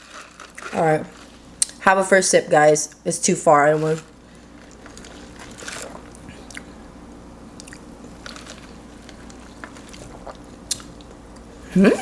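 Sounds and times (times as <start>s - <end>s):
swallowing: 9.6s - 11.2s.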